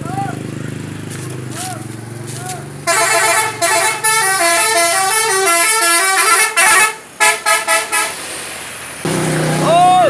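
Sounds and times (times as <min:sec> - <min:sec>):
bus musical horn tune: 0:02.9 - 0:08.2
short horn blasts: 0:02.9 - 0:08.2.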